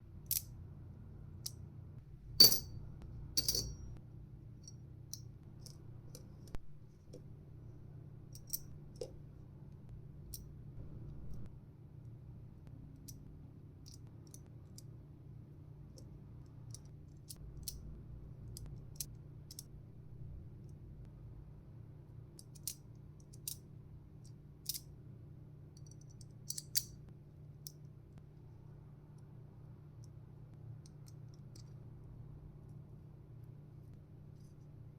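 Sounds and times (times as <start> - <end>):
ringing metal clinks: 2.4 - 2.8, 3.4 - 3.9.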